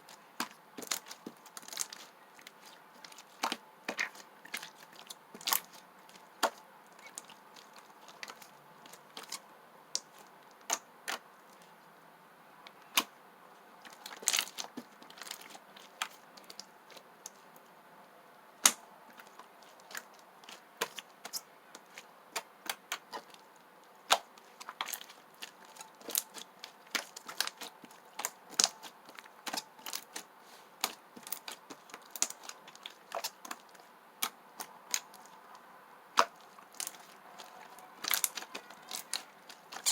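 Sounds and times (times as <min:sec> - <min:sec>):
slime clicking and popping: 0:36.2 - 0:39.9.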